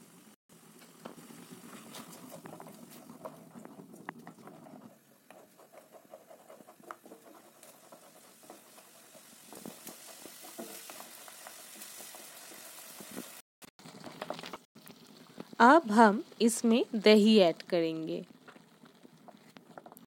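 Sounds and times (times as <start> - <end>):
spice paste sizzling in oil: 0.0 - 20.0
spatula scraping a pan: 1.1 - 13.3.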